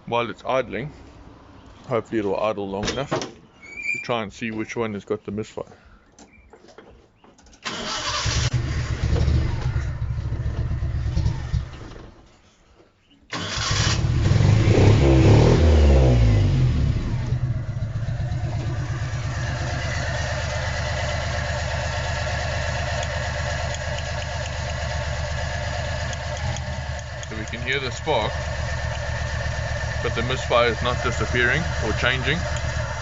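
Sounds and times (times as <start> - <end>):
engine revving: 7.7 - 12.0, 13.3 - 33.0
car engine idling rough: 8.6 - 11.9, 16.5 - 33.0.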